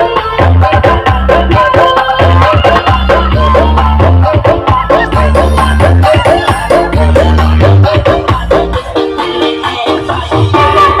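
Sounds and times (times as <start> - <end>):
loud dance music: 0.0 - 11.0.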